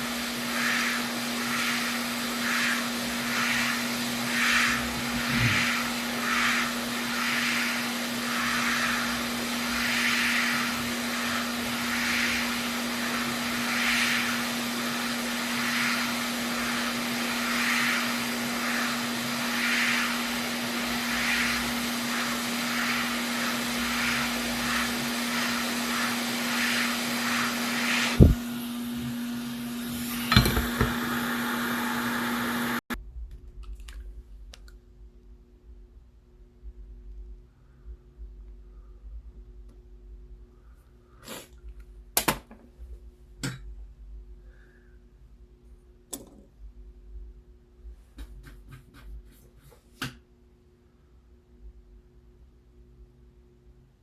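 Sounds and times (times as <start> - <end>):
hot air station hissing: 0.0 - 32.9.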